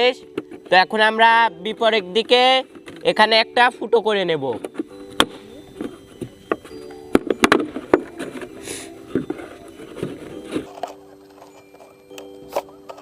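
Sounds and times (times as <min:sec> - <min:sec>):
plastic bottle clicking and crackling: 0:04.5 - 0:13.0.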